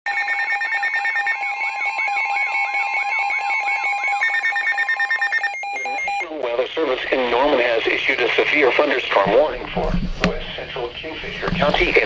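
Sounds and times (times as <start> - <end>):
alarms beeping and warbling: 0.2 - 6.3.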